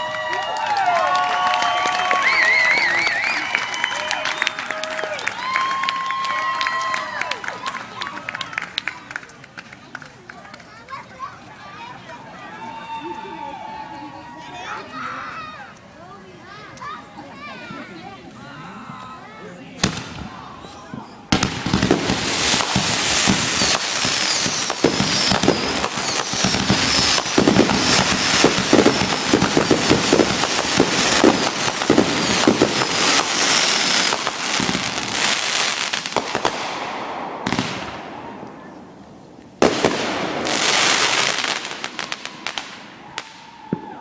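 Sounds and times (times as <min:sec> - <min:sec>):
fireworks bangs and crackling: 0:19.8 - 0:44.0.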